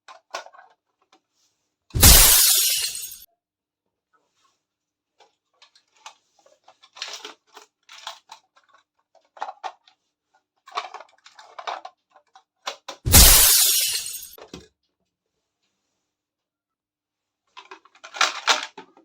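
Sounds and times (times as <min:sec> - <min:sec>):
loud sudden crash: 0:02.0 - 0:03.1, 0:13.1 - 0:14.3
plastic toy pieces clicking: 0:17.6 - 0:19.0.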